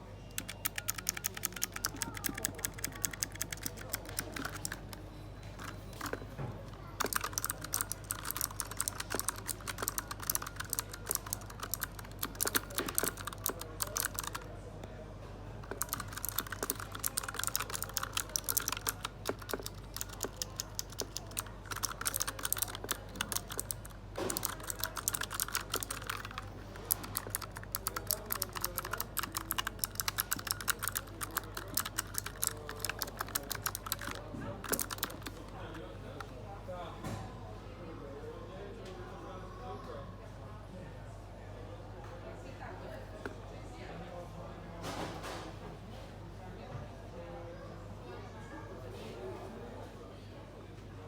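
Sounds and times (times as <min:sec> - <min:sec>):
mechanical keyboard typing: 0:00.3 - 0:15.0, 0:15.6 - 0:35.9.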